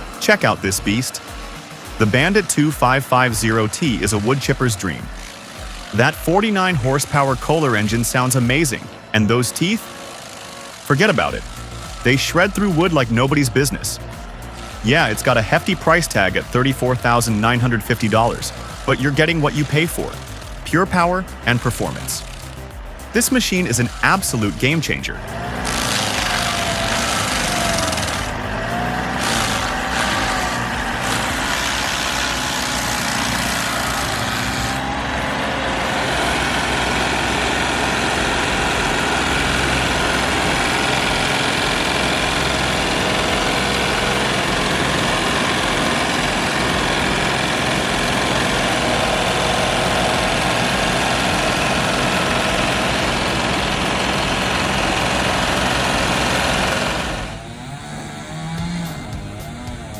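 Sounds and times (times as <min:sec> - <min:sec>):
wood chipper engine chewing wood: 0:00.0 - 0:59.9.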